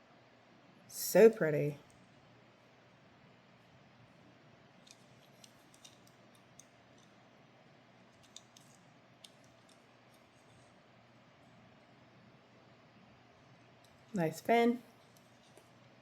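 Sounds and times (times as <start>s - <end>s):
toy cars clicking: 4.8s - 7.2s, 8.1s - 10.6s.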